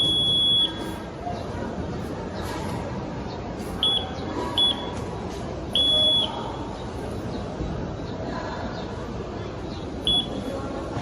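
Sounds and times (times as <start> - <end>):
morse code buzzer beeps: 0.0 - 1.0, 3.8 - 4.9, 10.1 - 10.4.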